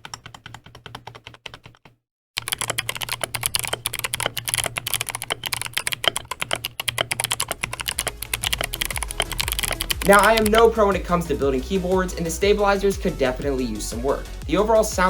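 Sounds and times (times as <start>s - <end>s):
mechanical keyboard typing: 0.0s - 10.7s.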